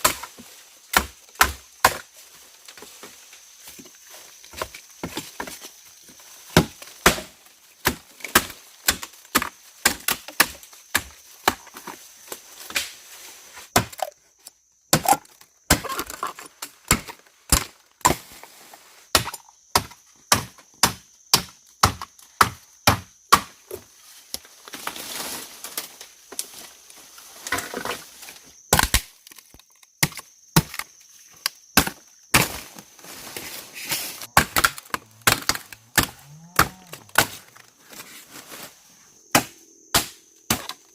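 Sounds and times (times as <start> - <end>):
wood being chopped: 0.9 - 2.0, 6.5 - 11.7, 13.7 - 14.1, 14.9 - 16.2, 16.9 - 18.2, 19.1 - 23.6, 28.7 - 30.9, 31.8 - 32.7, 34.4 - 37.5, 39.3 - 40.8.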